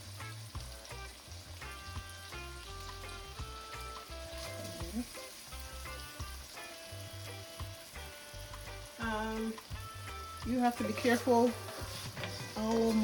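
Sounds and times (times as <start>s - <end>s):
vegetables sizzling in oil: 0.0s - 13.0s
stirring in a pot: 10.4s - 13.0s.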